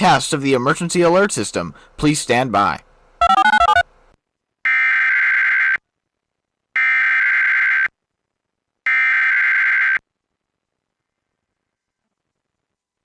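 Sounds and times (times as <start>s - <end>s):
digital data tones warbling: 3.2s - 3.8s.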